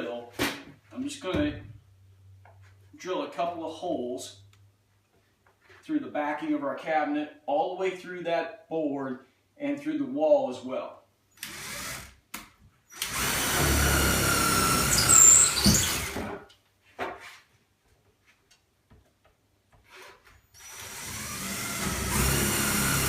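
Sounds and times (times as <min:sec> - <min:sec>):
power drill whining: 0:11.4 - 0:12.2, 0:12.9 - 0:16.4, 0:19.9 - 0:23.0.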